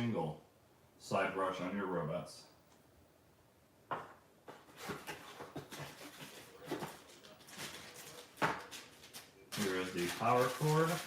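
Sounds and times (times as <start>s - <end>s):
items being handled: 3.9s - 11.0s
packaging rustling: 4.5s - 11.0s.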